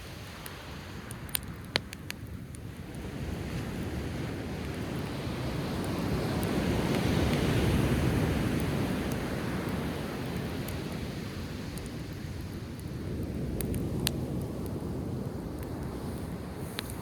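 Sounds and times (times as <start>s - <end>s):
campfire crackling: 0.0s - 17.0s
sea waves surging onto shore: 3.0s - 12.6s.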